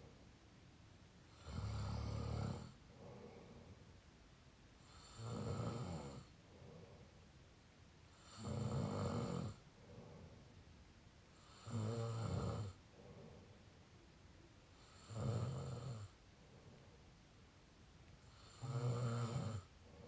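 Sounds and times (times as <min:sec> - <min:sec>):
loud snoring: 0:01.3 - 0:02.8, 0:04.8 - 0:06.3, 0:08.2 - 0:09.6, 0:11.4 - 0:12.8, 0:14.8 - 0:16.1, 0:18.3 - 0:19.7
soft breathing: 0:01.3 - 0:04.2, 0:04.8 - 0:08.5, 0:09.4 - 0:11.8, 0:12.7 - 0:15.1, 0:16.0 - 0:17.5, 0:19.3 - 0:20.0.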